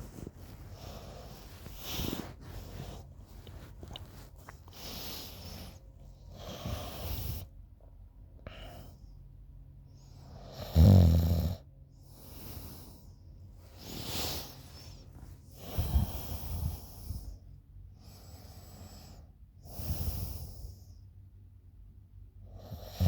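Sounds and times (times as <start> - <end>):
slow breathing: 0.0 - 7.6, 8.4 - 9.2, 12.0 - 21.0
woman snoring: 6.3 - 7.4, 10.4 - 11.6.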